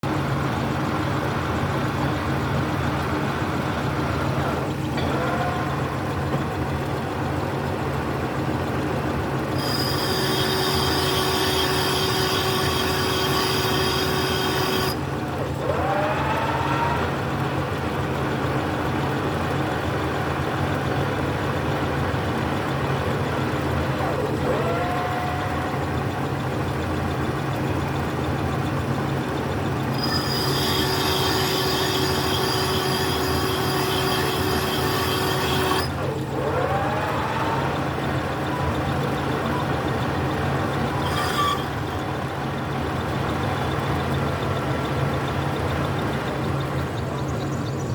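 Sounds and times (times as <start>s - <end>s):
lathe motor hum: 0.0s - 47.9s
high whine: 37.4s - 46.8s.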